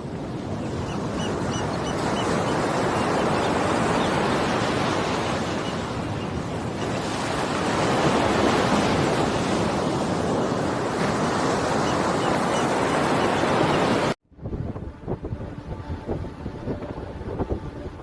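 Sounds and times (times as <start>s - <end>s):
ocean waves: 0.0s - 14.2s
wind: 0.0s - 18.0s.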